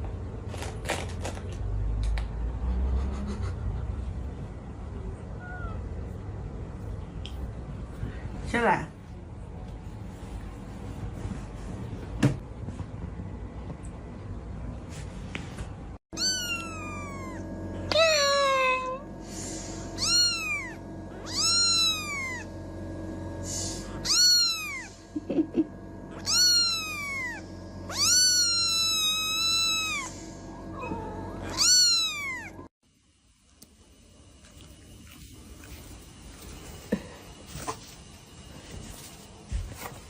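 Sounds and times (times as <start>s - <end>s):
cat meowing: 5.4s - 5.9s, 16.2s - 19.0s, 20.0s - 22.5s, 24.0s - 25.0s, 26.2s - 32.7s.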